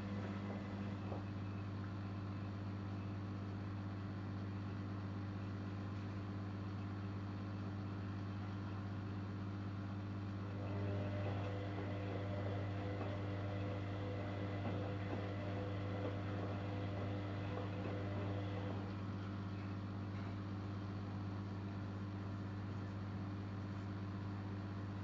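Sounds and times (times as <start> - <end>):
washer-dryer humming: 0.0 - 2.8, 3.9 - 25.0
motor tone with light ticks: 0.0 - 25.0.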